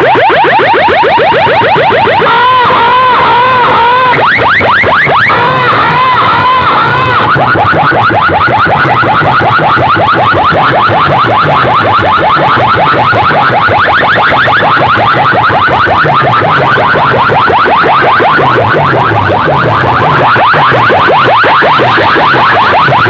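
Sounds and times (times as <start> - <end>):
electronic siren-like sweeps: 0.0 - 23.0
low bass pattern: 18.0 - 21.1.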